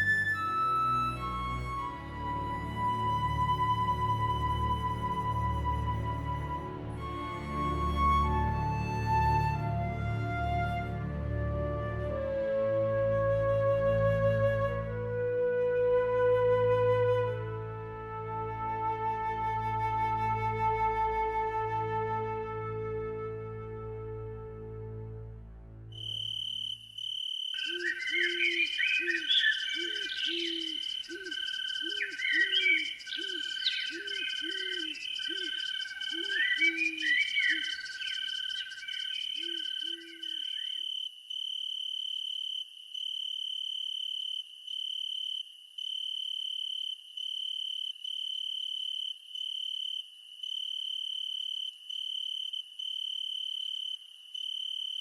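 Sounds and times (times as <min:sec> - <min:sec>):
higher chirps: 0:26.0 - 0:41.0
high insect trill: 0:26.0 - 0:55.0
low frog call: 0:26.0 - 0:55.0.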